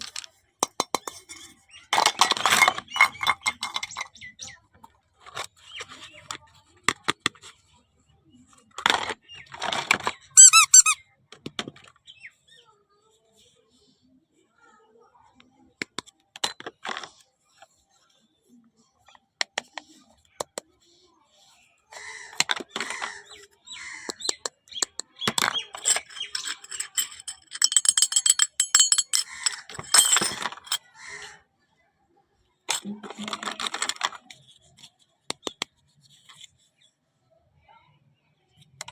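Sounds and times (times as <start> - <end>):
clicks taps and clinks: 0.0 - 4.2, 24.1 - 30.8
rustling or scraping: 25.3 - 30.8.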